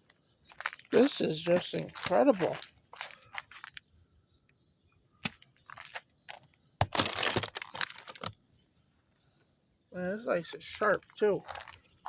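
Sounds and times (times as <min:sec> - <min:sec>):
ice crust cracking and crunching: 0:00.5 - 0:03.9, 0:05.2 - 0:08.4, 0:11.0 - 0:12.0.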